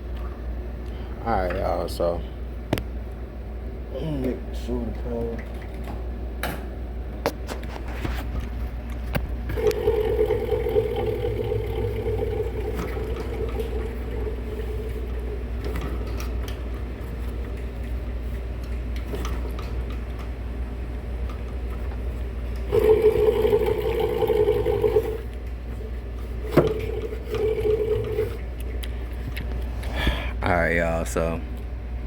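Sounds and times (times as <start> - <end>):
blower motor humming: 7.5 - 32.0.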